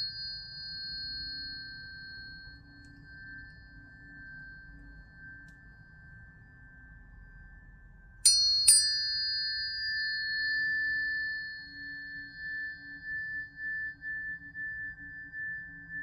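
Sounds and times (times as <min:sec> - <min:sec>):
tuning fork ringing: 0:00.0 - 0:16.0.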